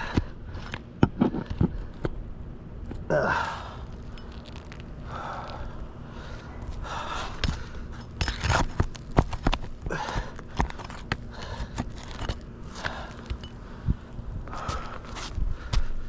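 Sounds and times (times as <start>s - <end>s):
scraping under shingles: 2.9s - 13.8s, 14.4s - 15.9s.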